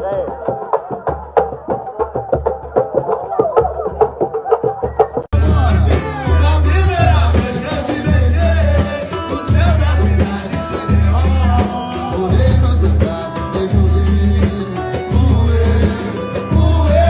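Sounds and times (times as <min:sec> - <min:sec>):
deep bass line: 0:05.3 - 0:17.0
person singing: 0:05.3 - 0:17.0.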